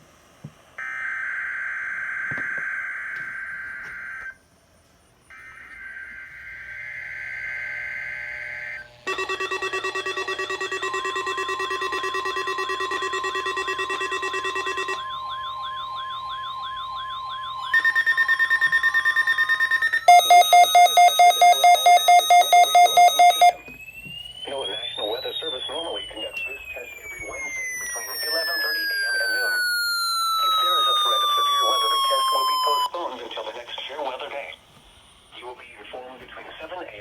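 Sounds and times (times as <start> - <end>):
warbling siren wail: 0.8 - 4.4, 5.4 - 33.0
buzzing data burst: 5.4 - 23.7, 24.4 - 33.6
pulsing alarm beeps: 9.1 - 33.5.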